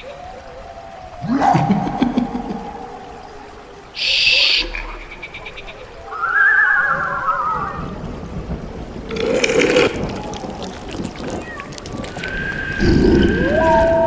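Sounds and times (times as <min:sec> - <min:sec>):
dim background ambience: 0:00.0 - 0:14.0
wavering wail: 0:06.1 - 0:08.1.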